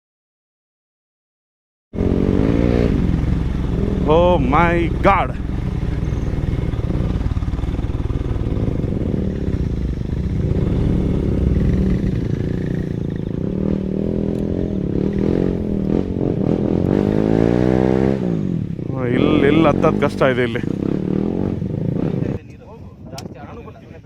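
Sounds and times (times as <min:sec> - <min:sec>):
motorcycle engine revving: 0:02.0 - 0:22.4.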